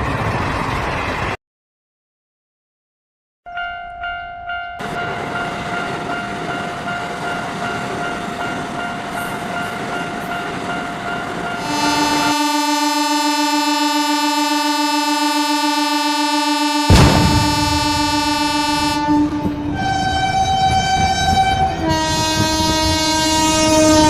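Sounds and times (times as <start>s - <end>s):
rumble of passing train: 0.0s - 1.4s, 3.5s - 24.0s
railroad crossing bell ringing: 3.5s - 22.1s
train horn long note: 11.6s - 24.0s.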